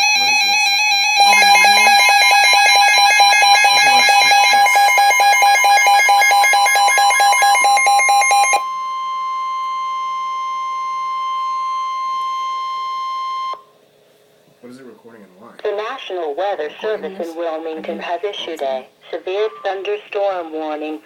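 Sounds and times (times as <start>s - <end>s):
pulsing two-tone alarm: 0.0s - 13.7s
steady high warning tone: 0.0s - 13.8s.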